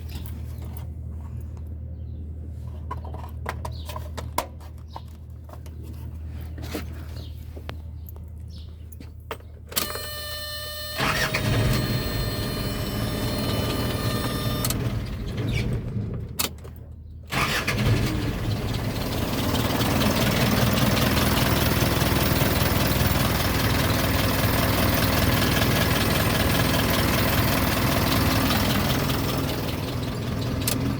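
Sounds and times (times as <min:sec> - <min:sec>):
truck engine starting and idling: 0:09.7 - 0:30.9
brief tone: 0:09.8 - 0:14.9.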